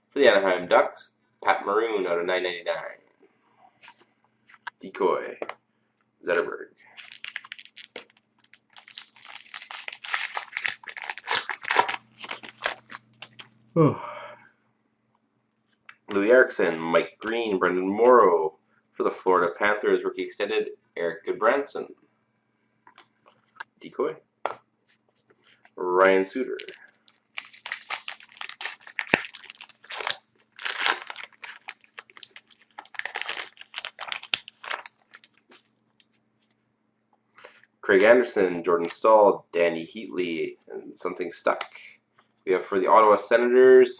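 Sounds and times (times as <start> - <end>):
foil wrapper crinkling: 6.9 - 13.5, 26.5 - 36.2.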